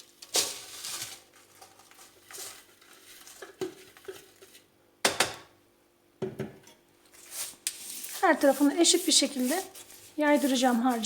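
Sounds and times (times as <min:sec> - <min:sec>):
crumbs scraped from a bowl: 0:07.1 - 0:11.0.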